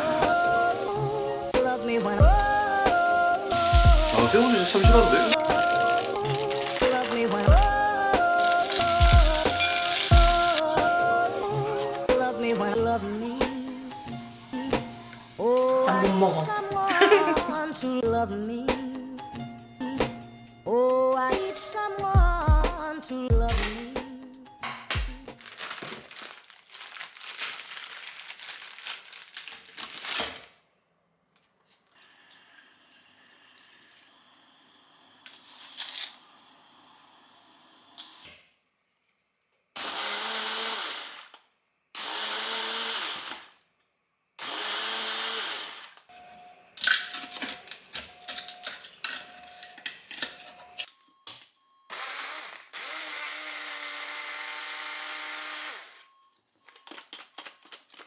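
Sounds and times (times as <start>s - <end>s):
kitchen clattering: 3.5s - 7.7s, 8.4s - 15.7s, 46.8s - 50.9s
blender motor running: 3.5s - 10.7s, 39.8s - 41.3s, 42.0s - 43.5s, 44.4s - 46.0s, 51.9s - 56.0s.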